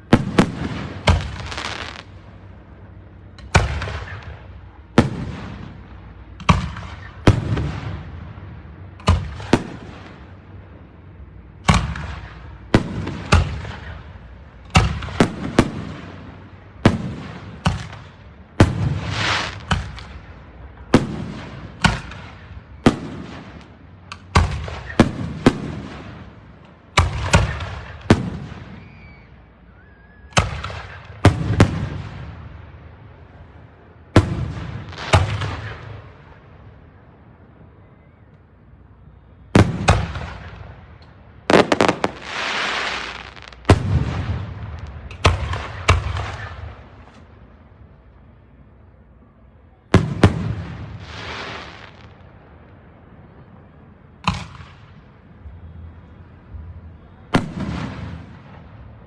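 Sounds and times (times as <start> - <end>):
firework crackle: 0.0 - 8.2, 11.7 - 29.8, 34.2 - 36.4, 41.4 - 47.6, 50.0 - 52.8.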